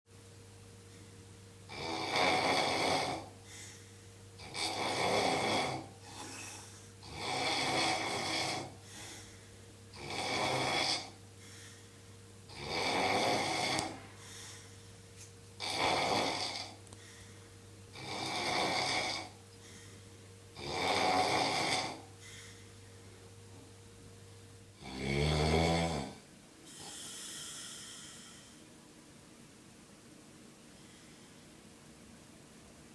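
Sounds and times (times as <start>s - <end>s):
man snoring loudly: 1.7s - 3.4s, 4.4s - 6.3s, 7.0s - 8.8s, 9.9s - 11.2s, 12.5s - 14.0s, 15.6s - 16.8s, 17.9s - 19.4s, 20.6s - 22.1s, 24.8s - 26.2s.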